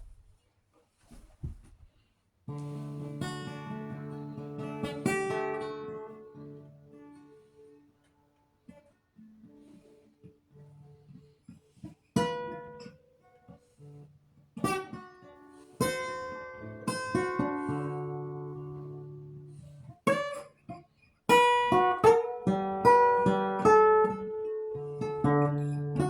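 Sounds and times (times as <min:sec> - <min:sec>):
acoustic guitar strumming: 0:02.5 - 0:07.4.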